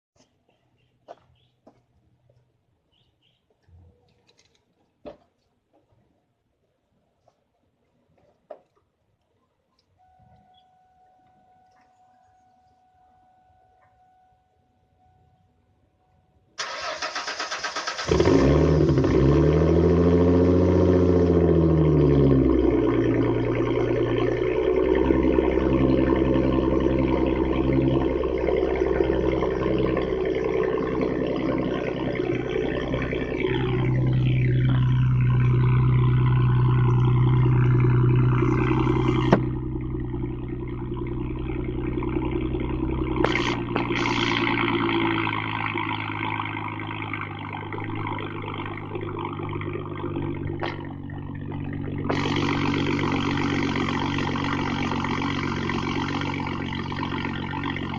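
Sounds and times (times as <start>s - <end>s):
car engine revving and idling: 16.6s - 57.9s.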